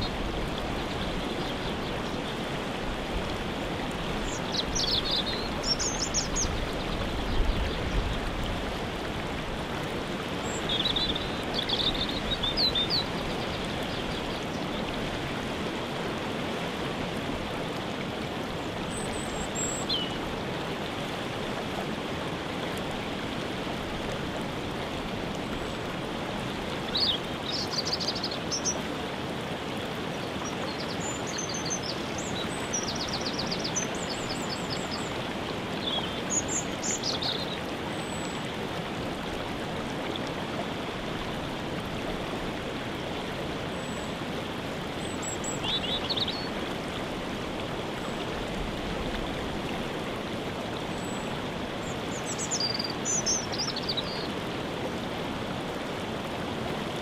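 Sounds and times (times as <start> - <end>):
waterfall rushing: 0.0 - 57.0
songbirds chirping and trilling: 4.2 - 8.3.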